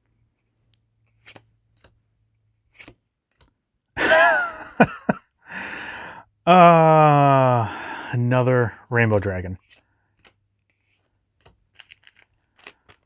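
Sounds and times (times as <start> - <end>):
wrapper crackling and rustling: 11.6 - 13.0.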